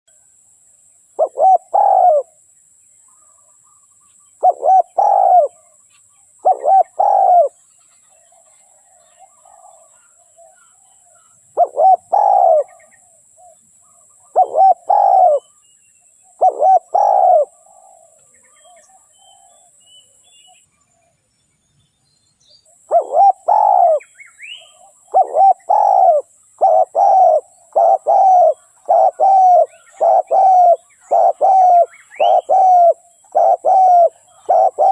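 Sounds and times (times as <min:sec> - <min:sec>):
dove cooing: 0:01.2 - 0:02.4, 0:04.4 - 0:05.8, 0:06.4 - 0:07.6, 0:08.3 - 0:15.6, 0:16.2 - 0:19.8, 0:22.7 - 0:34.9.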